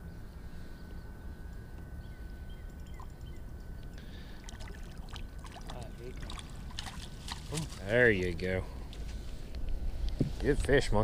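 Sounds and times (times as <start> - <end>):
faint high-pitched whine: 0.0 - 11.0
water around a boat: 2.5 - 11.0.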